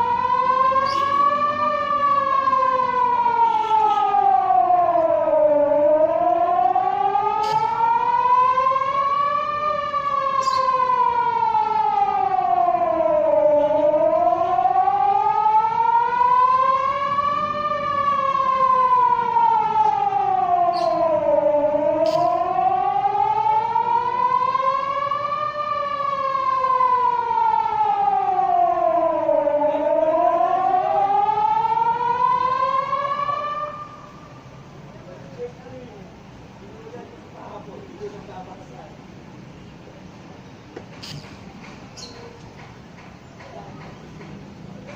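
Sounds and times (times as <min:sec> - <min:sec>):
warning siren wailing: 0:00.0 - 0:34.7.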